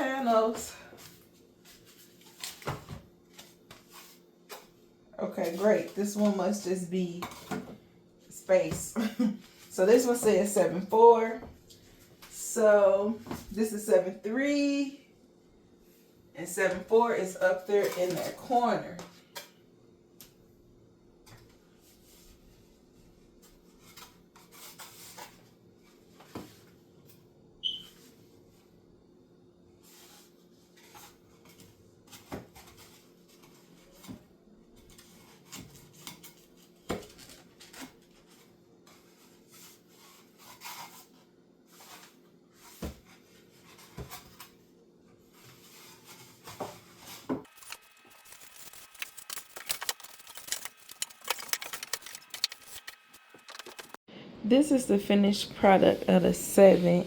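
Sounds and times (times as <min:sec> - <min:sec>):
small clicks and crinkling: 0:47.5 - 0:54.0.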